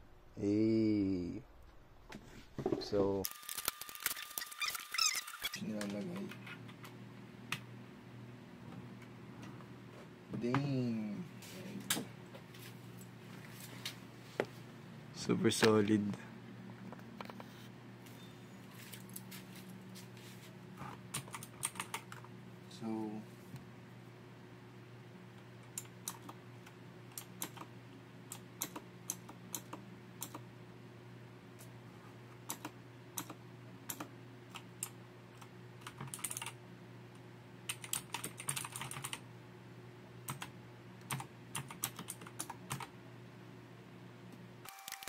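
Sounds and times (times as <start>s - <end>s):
mechanical keyboard typing: 21.1s - 22.2s, 27.2s - 27.7s, 32.5s - 34.7s, 35.8s - 36.6s, 37.7s - 39.2s, 40.3s - 42.9s.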